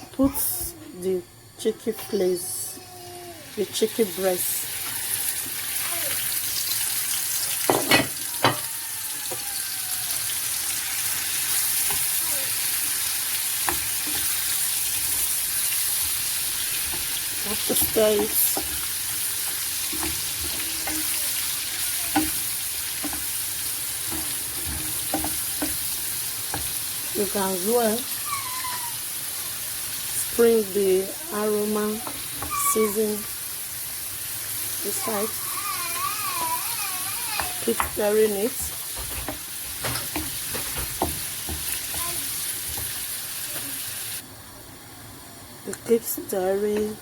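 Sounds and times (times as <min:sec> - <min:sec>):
chicken sizzling in oil: 0:03.3 - 0:44.2
utensil knocking and scraping pan: 0:24.1 - 0:26.7, 0:37.4 - 0:42.0.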